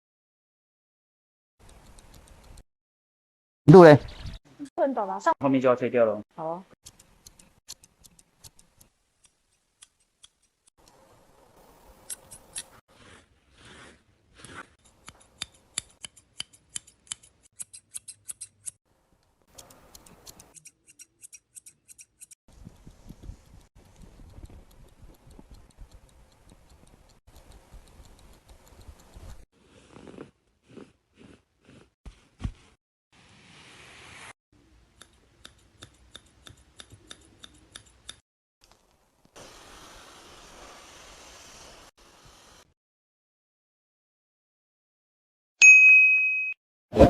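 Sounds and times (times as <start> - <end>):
scissors snipping hair: 14.4 - 18.8, 19.5 - 29.4, 35.0 - 38.2.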